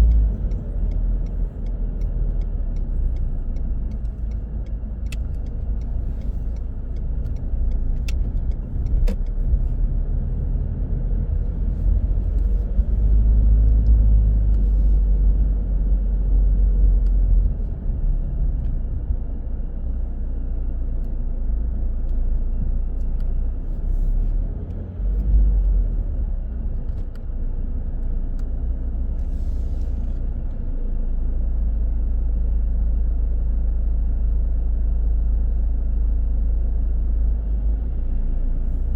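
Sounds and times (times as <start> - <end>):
car engine and road noise: 0.0 - 38.9.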